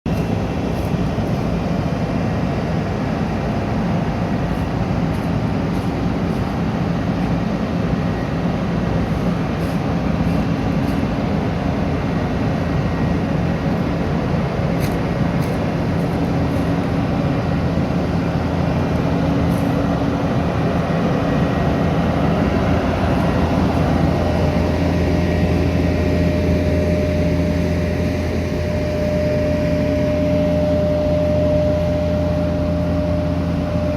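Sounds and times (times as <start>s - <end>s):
heavy machinery engines droning: 0.1s - 33.9s
traffic: 0.1s - 33.9s
steady high tone: 15.3s - 33.9s.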